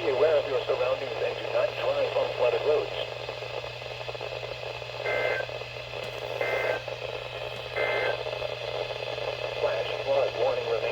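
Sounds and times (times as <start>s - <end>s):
radio static hiss: 0.0s - 10.9s.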